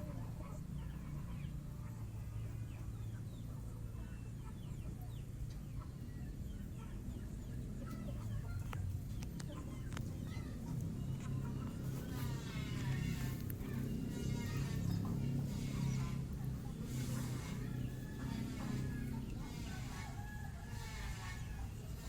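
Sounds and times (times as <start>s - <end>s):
low steady rumble: 0.0s - 22.0s
fowl clucking: 7.8s - 22.0s.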